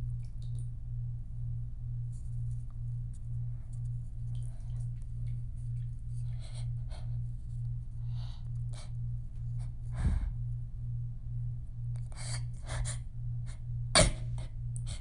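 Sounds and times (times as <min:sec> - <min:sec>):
pulsing low hum: 0:00.0 - 0:15.0
woman breathing and sniffing: 0:09.6 - 0:10.4.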